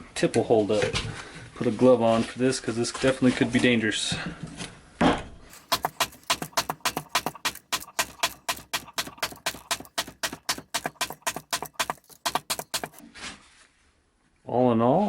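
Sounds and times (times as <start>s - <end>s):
knife tip stabbing hard surface: 5.5s - 13.0s.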